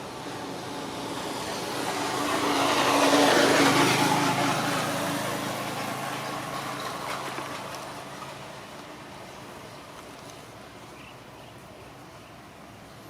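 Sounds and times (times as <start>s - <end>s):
vehicle passing by: 0.0s - 8.8s.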